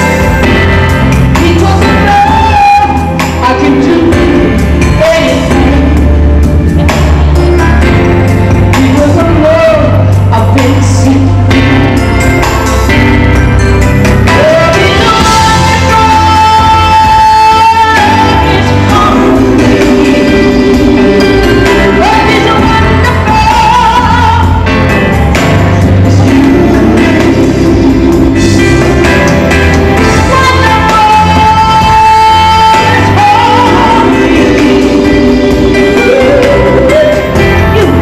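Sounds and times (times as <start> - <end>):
instrumental backing: 0.0 - 38.0
woman singing: 1.2 - 6.2, 8.7 - 11.9, 14.3 - 24.8, 25.9 - 29.3, 30.0 - 38.0.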